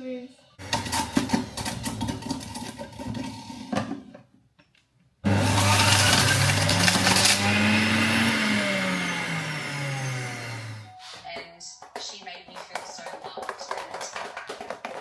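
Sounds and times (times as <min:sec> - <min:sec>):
blender motor running: 0:00.6 - 0:02.1, 0:05.2 - 0:10.9.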